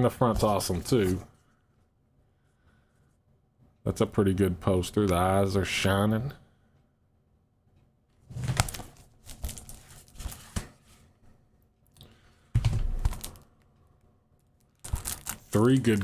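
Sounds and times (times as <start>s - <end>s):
cardboard rustling: 0.3s - 1.3s, 8.3s - 11.1s, 12.6s - 13.4s, 14.8s - 16.0s.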